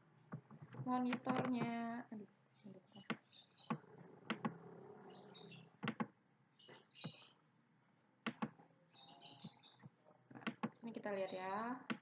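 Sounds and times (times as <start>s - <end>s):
faint bird chirps: 2.5s - 5.8s, 6.5s - 7.4s, 8.8s - 10.2s
keyboard key clicks: 5.8s - 6.1s.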